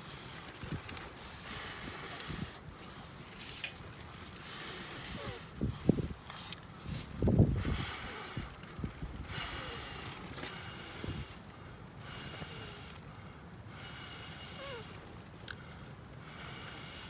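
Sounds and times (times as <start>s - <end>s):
breath puffs through blowing pipe: 4.2s - 17.0s.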